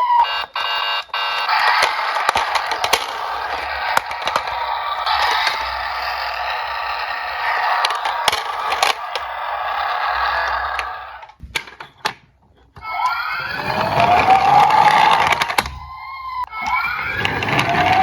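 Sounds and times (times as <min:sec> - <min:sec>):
clicks: 0:00.0 - 0:18.0
toy cars rattling down plastic slope: 0:00.0 - 0:18.0
rising whine: 0:01.1 - 0:11.3.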